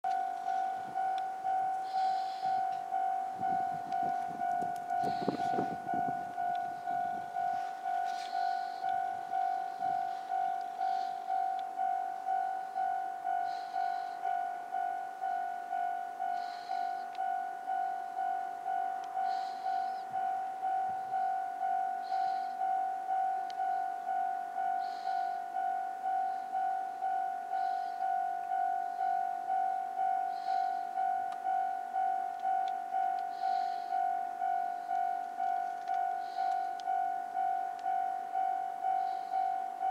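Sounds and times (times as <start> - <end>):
level-crossing warning bell: 0.0 - 39.9
railcar rumble and clatter: 2.7 - 10.8.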